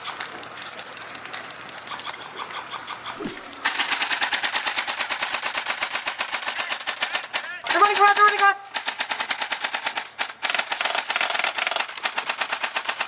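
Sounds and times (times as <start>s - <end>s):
airsoft rifles firing: 3.2s - 13.0s
close gun firing long burst: 3.6s - 13.0s.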